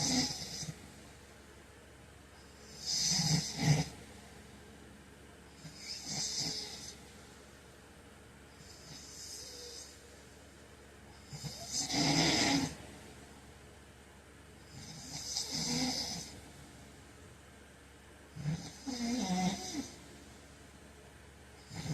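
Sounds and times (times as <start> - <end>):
man snoring: 0.0 - 0.9, 2.6 - 4.3, 5.6 - 7.1, 8.6 - 10.0, 11.2 - 12.9, 14.7 - 16.5, 18.4 - 20.0, 21.6 - 21.9.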